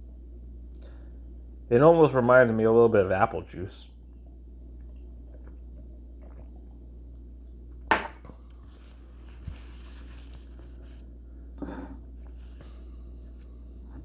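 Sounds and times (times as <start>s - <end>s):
low electrical hum: 0.0s - 14.0s
bottle knocking on hard surface: 7.9s - 8.3s.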